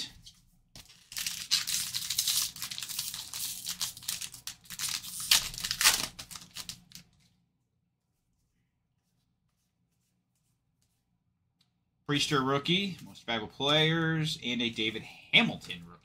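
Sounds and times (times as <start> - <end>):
wrapper tearing and crinkling: 0.9 - 7.1.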